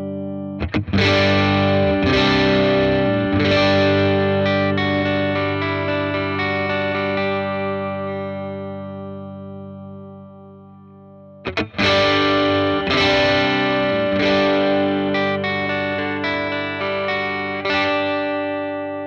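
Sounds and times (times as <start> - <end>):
electric guitar chords: 0.0 - 19.0.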